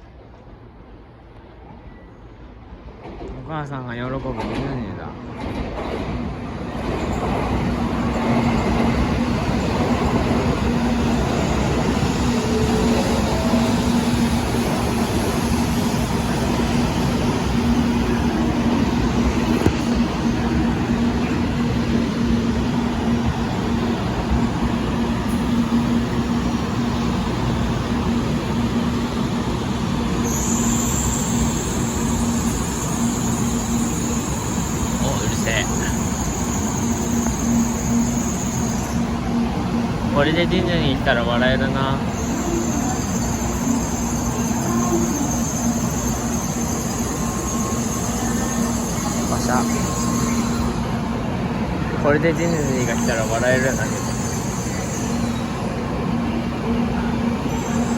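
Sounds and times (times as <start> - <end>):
train rushing past: 1.0 - 57.9.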